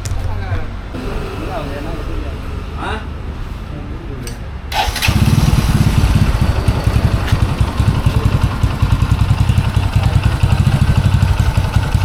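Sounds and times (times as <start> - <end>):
motorcycle engine idling: 4.7 - 12.0.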